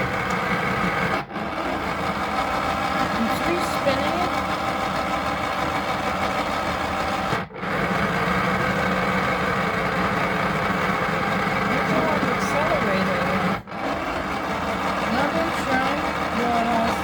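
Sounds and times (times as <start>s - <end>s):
small electric motor running: 0.0s - 17.0s.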